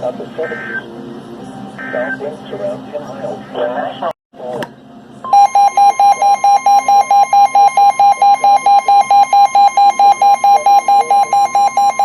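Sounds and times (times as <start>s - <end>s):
high steady alarm tone: 5.3s - 12.0s
rapid pulsing beeps: 5.3s - 12.0s.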